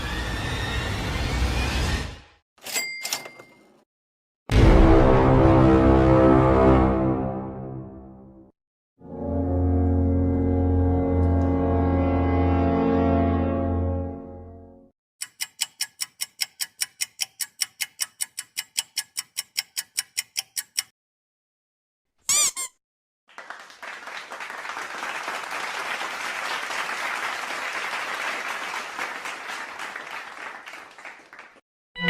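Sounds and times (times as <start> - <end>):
clock-like ticking: 15.2 - 20.9
applause: 23.3 - 31.6.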